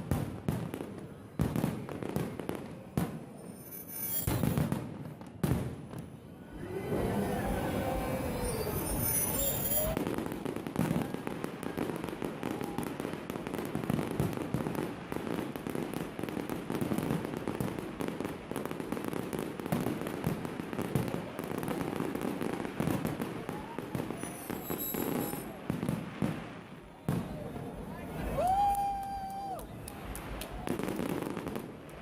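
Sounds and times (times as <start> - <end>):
fireworks bangs and crackles: 0.0 - 32.0
fireworks whistles: 3.0 - 5.7, 6.4 - 13.1, 20.9 - 27.3.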